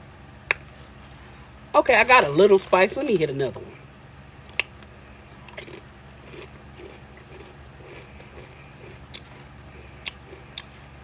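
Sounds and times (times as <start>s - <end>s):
quiet chewing: 4.6s - 11.0s
potato chip crunching: 5.3s - 11.0s.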